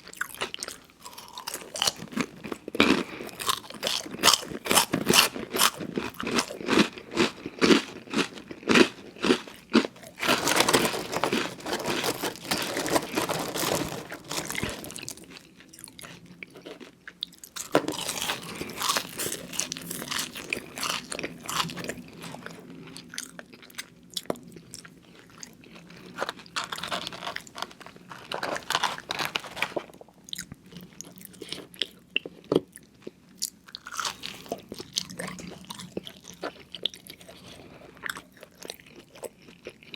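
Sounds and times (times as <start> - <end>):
person chewing crunchy food: 0.0 - 39.9.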